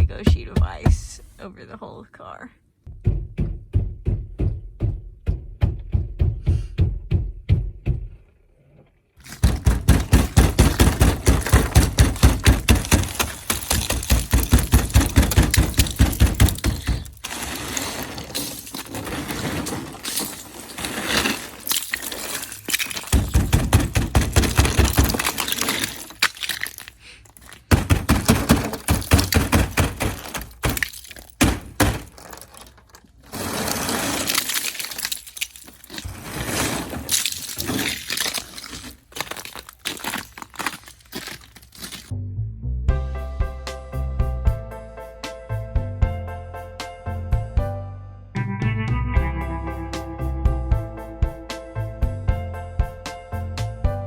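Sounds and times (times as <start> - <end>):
ice cracking and shattering: 9.2 - 42.1
ice knocked off car thunks: 9.2 - 42.1.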